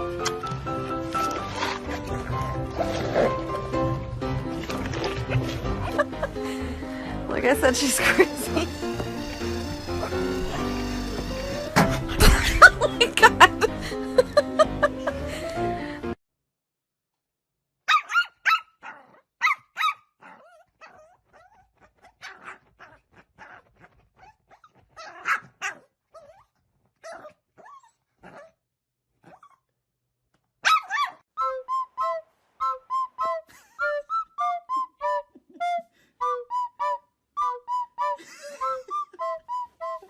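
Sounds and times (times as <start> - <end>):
plucked background music: 0.0 - 16.2
dog barking and yipping: 17.9 - 28.5, 30.6 - 31.2.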